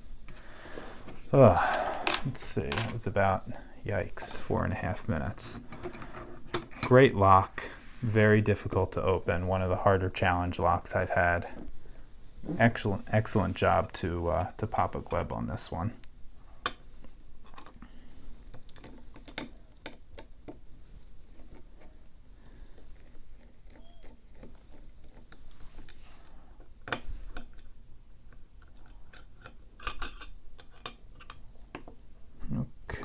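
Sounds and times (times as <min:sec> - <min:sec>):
metal lock and tools clicking: 0:05.6 - 0:07.0.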